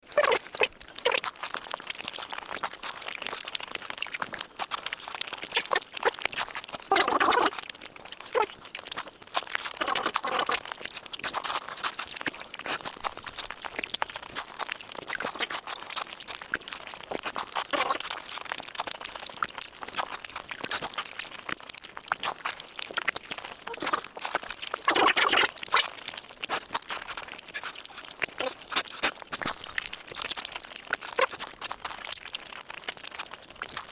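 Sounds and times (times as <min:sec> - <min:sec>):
chewing and crunching food: 0:00.0 - 0:33.9.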